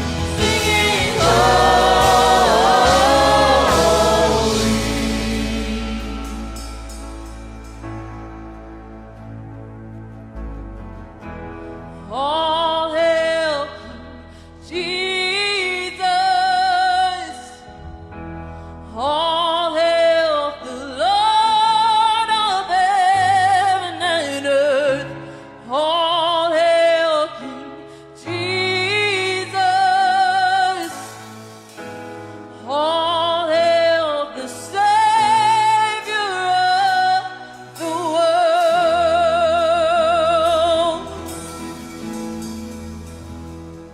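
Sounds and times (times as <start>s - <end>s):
person singing: 0.0s - 6.9s
low musical accompaniment: 0.0s - 16.6s, 28.4s - 43.9s.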